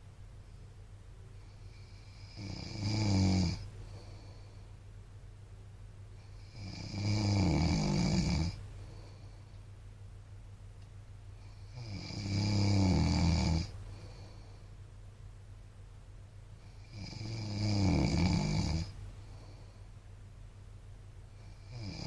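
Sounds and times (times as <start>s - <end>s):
steady low hum: 0.0s - 22.0s
man snoring: 1.7s - 3.7s, 6.4s - 8.6s, 11.6s - 13.8s, 16.8s - 19.0s, 21.5s - 22.0s.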